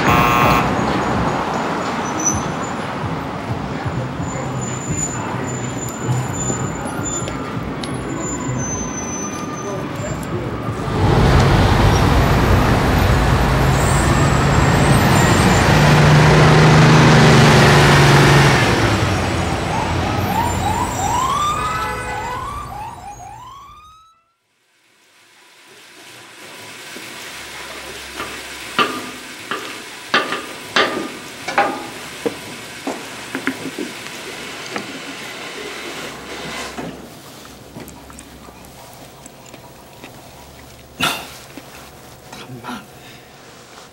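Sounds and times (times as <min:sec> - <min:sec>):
siren sweeping: 0:00.0 - 0:00.9, 0:18.2 - 0:24.4
traffic noise: 0:00.0 - 0:23.9, 0:25.2 - 0:43.9.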